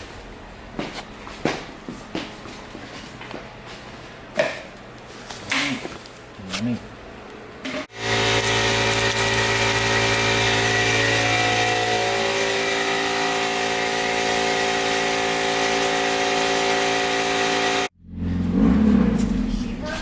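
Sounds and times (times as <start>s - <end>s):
machine motor running: 7.9s - 17.9s.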